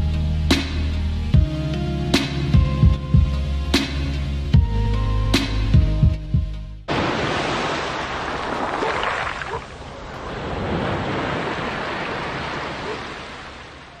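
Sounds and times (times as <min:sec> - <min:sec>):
sea surf washing onto beach: 0:06.9 - 0:14.0.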